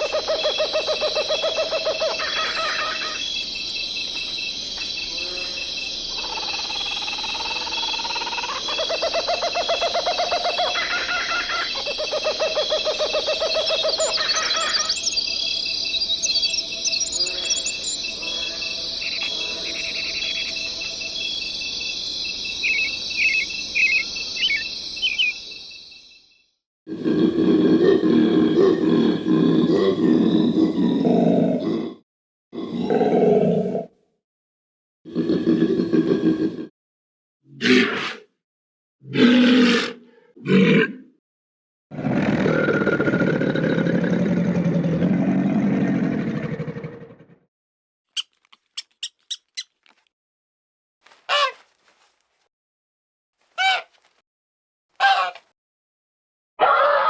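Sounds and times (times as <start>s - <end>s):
animal calling: 0.0s - 3.3s, 5.1s - 15.1s, 51.2s - 51.8s, 53.6s - 54.1s, 55.0s - 55.5s, 56.6s - 57.0s
bird chirps: 0.0s - 26.3s, 48.1s - 50.0s
insects chirping: 0.0s - 26.5s.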